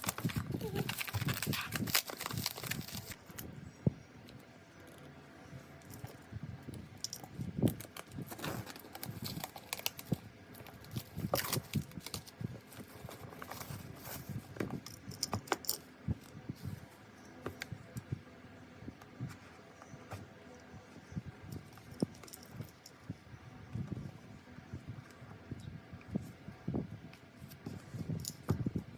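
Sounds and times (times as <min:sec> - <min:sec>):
packaging crinkling and rustling: 0:00.0 - 0:03.4, 0:07.1 - 0:15.8.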